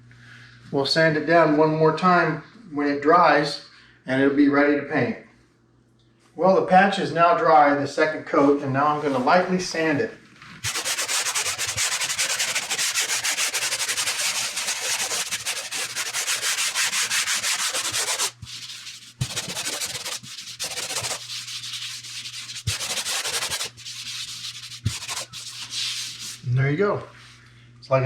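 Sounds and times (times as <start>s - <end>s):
hand sander scratching drywall: 10.6s - 26.5s.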